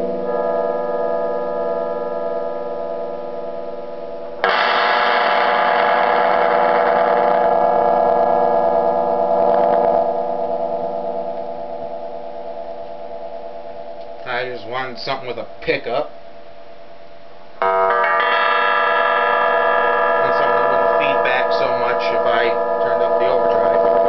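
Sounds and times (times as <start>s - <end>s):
loud bright guitar strum: 0.0s - 11.8s, 17.6s - 24.0s
lap steel guitar chord ringing: 0.0s - 16.3s, 17.6s - 24.0s.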